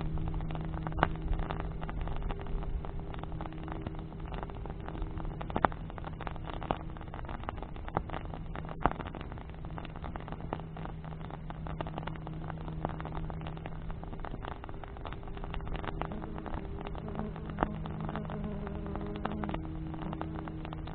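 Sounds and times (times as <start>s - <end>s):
bonfire crackling and popping: 0.0s - 20.9s
steady low hum: 0.0s - 20.9s.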